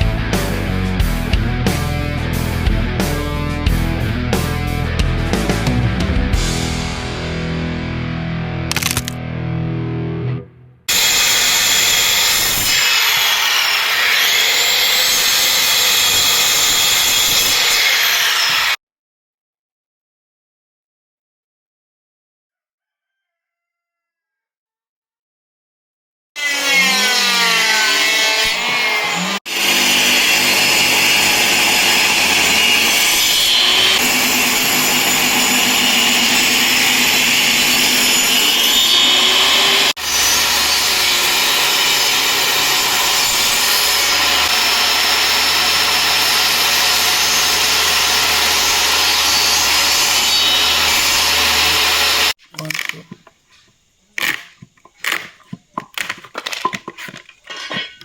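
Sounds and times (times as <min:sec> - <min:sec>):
power tool grinding wood: 0:10.9 - 0:18.8, 0:26.4 - 0:58.0.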